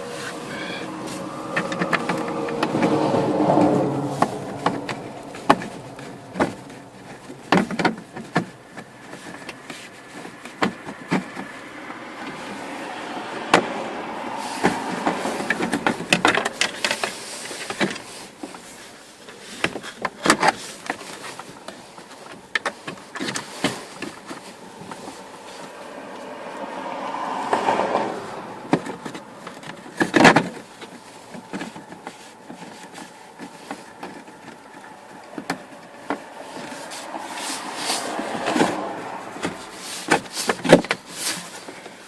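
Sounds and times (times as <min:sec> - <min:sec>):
hard plastic clicking and knocking: 0:01.5 - 0:12.5, 0:28.6 - 0:36.8.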